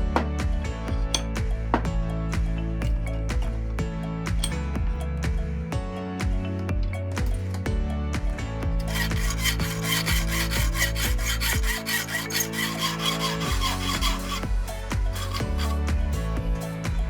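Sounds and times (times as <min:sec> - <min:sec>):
background music: 0:00.0 - 0:17.0
hand saw rasping: 0:08.8 - 0:15.8.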